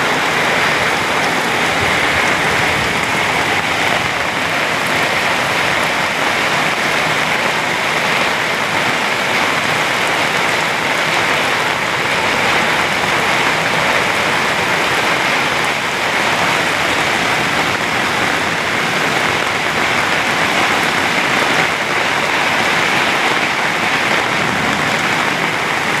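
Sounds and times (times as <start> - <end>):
heavy rain falling: 0.0 - 26.0.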